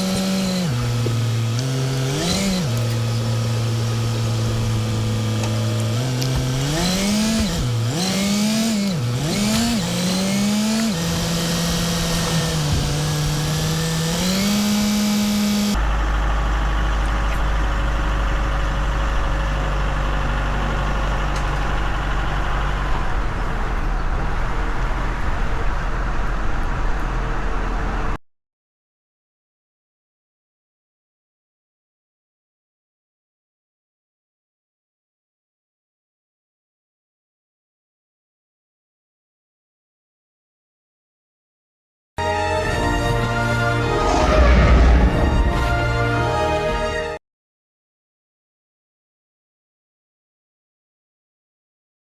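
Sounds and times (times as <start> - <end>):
engine revving: 0.0 - 15.8, 43.3 - 46.8
deep engine rumble: 15.8 - 28.1, 42.8 - 46.8.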